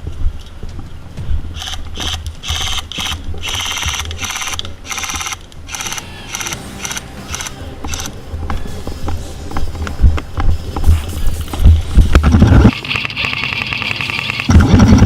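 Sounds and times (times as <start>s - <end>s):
airsoft rifle firing bursts: 1.6s - 8.2s.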